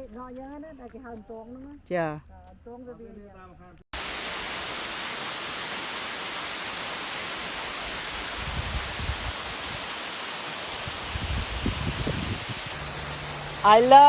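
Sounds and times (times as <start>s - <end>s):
waterfall rushing: 4.0s - 14.0s
wind gusts on microphone: 7.8s - 9.9s, 10.8s - 12.8s.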